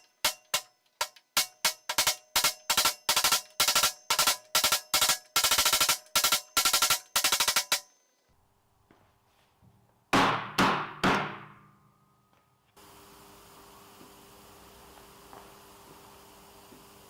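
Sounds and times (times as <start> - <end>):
rubber hammer striking metal wheel: 0.0 - 8.0, 10.1 - 12.4.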